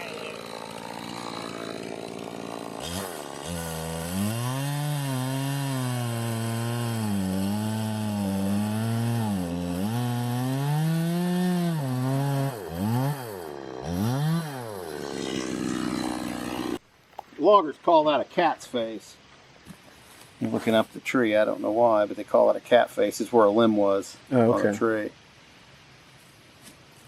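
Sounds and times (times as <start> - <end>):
chainsaw cutting log: 0.0 - 16.8.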